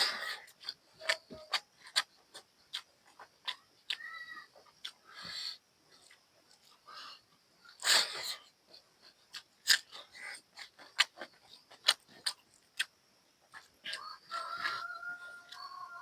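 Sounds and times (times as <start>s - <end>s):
chewing food: 0.0s - 16.0s.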